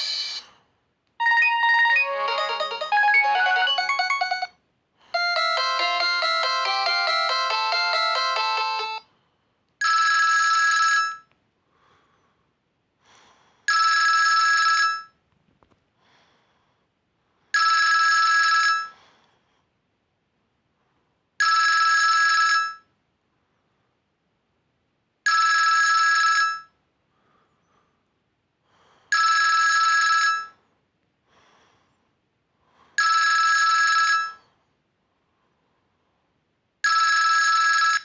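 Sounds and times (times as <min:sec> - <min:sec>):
electronic ringtone melodies: 0:01.2 - 0:04.5, 0:05.2 - 0:09.0
telephone ring: 0:01.2 - 0:04.6, 0:05.2 - 0:09.0, 0:09.8 - 0:11.3, 0:13.7 - 0:15.2, 0:17.6 - 0:19.0, 0:21.4 - 0:22.9, 0:25.3 - 0:26.8, 0:29.1 - 0:30.6, 0:33.0 - 0:34.4, 0:36.8 - 0:38.0.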